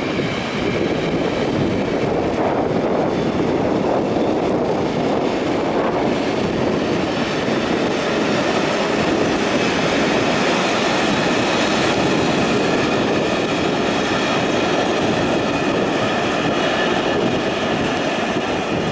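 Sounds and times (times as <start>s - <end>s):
train rumbling on rails: 0.0s - 18.9s.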